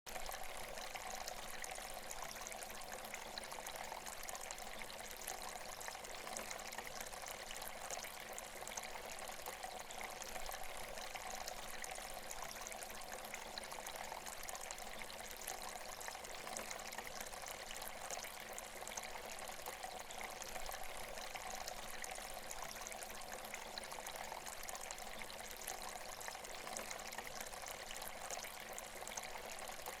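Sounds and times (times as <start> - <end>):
water pouring and trickling: 0.1 - 30.0.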